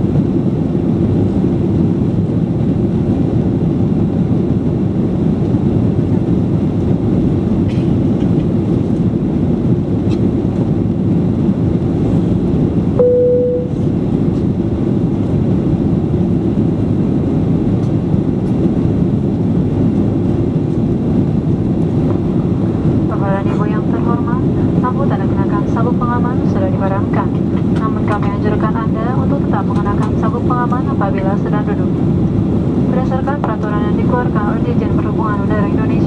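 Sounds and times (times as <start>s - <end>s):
airplane cabin engine noise: 0.0s - 36.0s
short cabin chime: 13.0s - 13.8s.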